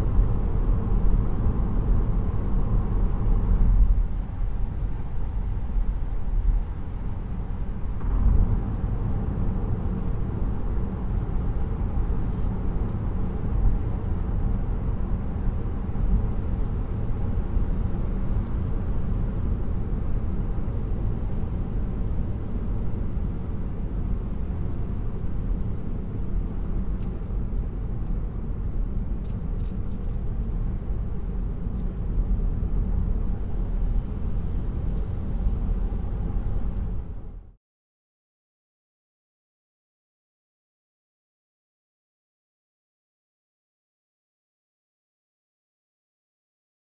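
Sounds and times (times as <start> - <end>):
road and tyre rumble: 0.0 - 37.6.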